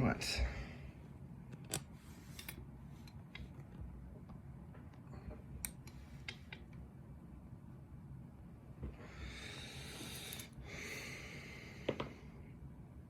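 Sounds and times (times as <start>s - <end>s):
lock pick clicking in lock: 1.5s - 2.6s.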